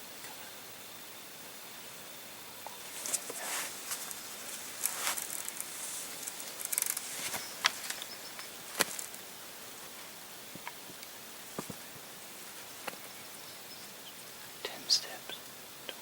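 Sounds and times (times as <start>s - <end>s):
light rustling: 2.7s - 9.2s
sharp clicks and ticks: 4.8s - 9.2s.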